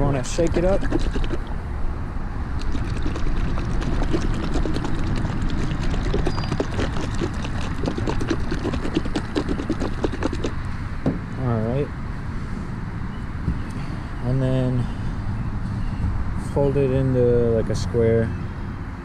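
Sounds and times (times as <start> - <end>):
plastic bottle shaken clicking: 0.5 - 1.5, 2.6 - 10.6.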